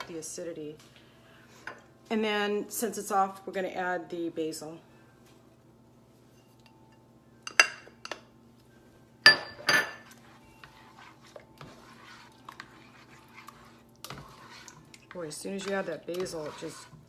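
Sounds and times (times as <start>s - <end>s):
spoon scraping and stirring: 9.9s - 17.0s.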